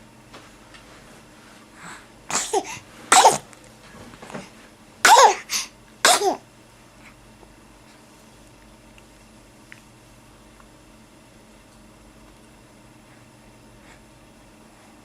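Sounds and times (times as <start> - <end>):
person sneezing: 2.3 - 3.5, 5.1 - 6.4.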